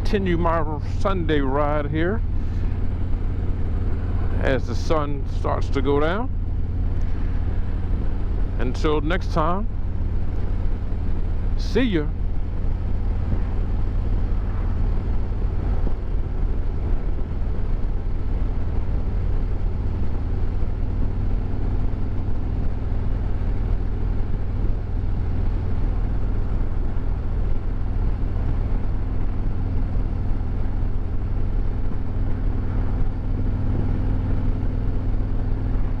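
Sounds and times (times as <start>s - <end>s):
motorcycle engine rumble: 0.0s - 36.0s
road and wind noise: 0.0s - 36.0s.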